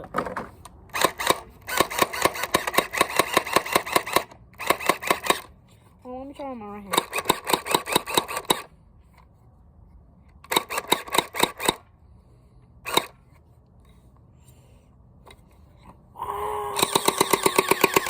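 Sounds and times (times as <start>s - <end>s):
motor whining: 16.2s - 18.0s
gel blaster firing bursts: 16.7s - 18.0s.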